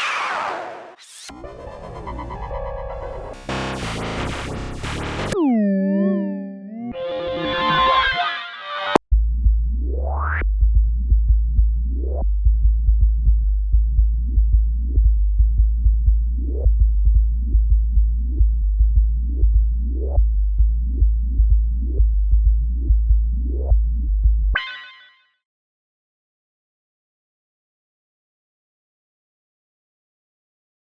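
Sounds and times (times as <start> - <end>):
synthesizer bass line: 0.0 - 8.2.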